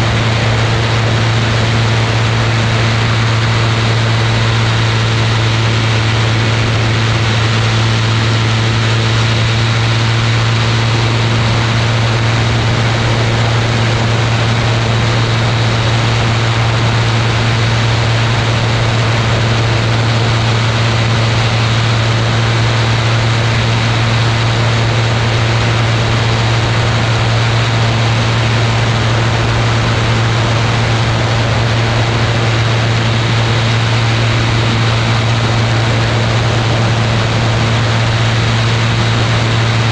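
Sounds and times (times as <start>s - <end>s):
aircraft engine and propeller drone: 0.0s - 39.9s.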